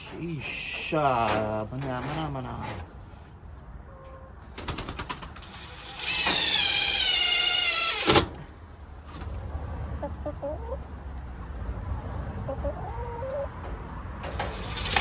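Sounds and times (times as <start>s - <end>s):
cordless drill whining: 5.5s - 8.3s.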